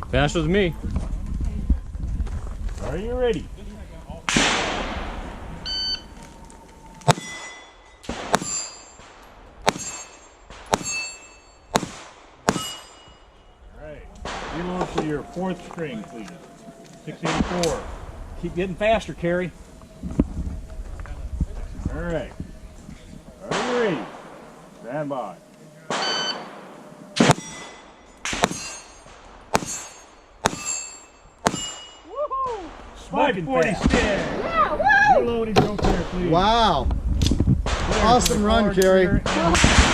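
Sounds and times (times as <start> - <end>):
pistol shots: 4.3 - 5.3, 7.0 - 11.1, 11.7 - 13.1, 25.9 - 30.8
shot timer beep: 5.6 - 6.1, 26.0 - 26.5
steel target ringing: 7.0 - 11.8, 12.4 - 13.6, 25.9 - 32.1.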